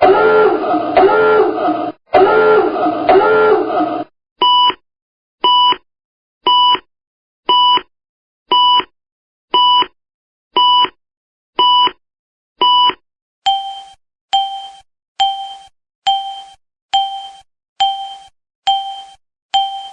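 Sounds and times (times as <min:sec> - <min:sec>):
harsh buzzing alarm tone: 0:00.0 - 0:04.1.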